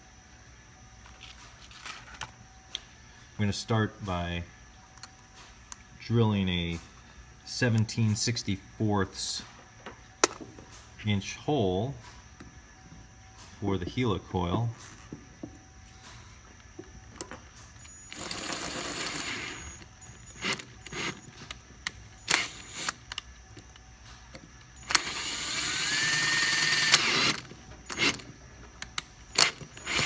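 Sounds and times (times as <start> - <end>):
electric drill boring metal: 17.8 - 21.4, 22.2 - 23.0, 24.8 - 28.3, 29.3 - 30.0.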